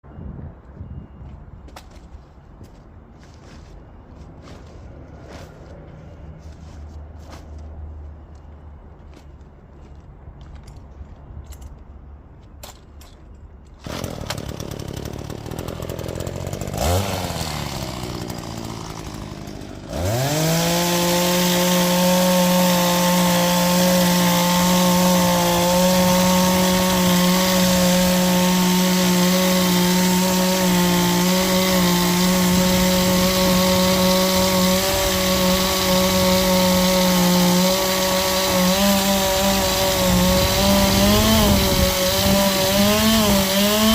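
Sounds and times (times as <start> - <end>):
hedge trimmer engine running: 13.8 - 43.9.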